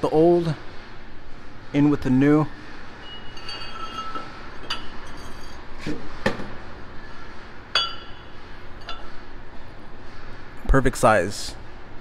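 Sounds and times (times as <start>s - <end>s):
metal brake parts clinking: 3.0s - 5.6s.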